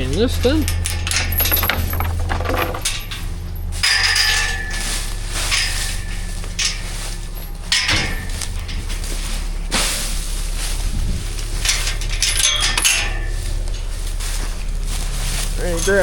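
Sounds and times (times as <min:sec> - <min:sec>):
metal chain rattling: 0:00.6 - 0:04.7.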